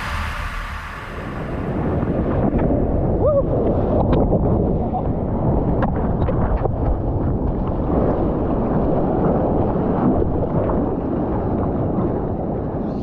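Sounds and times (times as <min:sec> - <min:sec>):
ocean surf: 0:00.0 - 0:03.0
wind buffeting microphone: 0:00.0 - 0:13.0.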